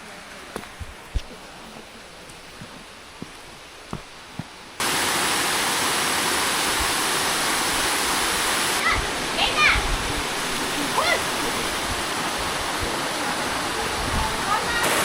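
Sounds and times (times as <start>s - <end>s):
waterfall rushing: 3.6s - 15.0s.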